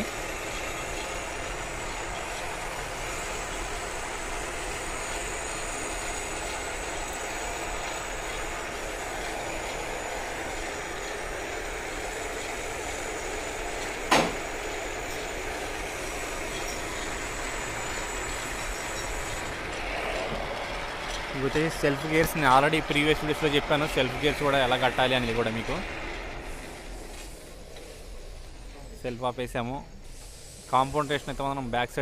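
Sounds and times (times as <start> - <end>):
lathe running: 0.0 - 29.2
sharp knock: 14.1 - 14.4.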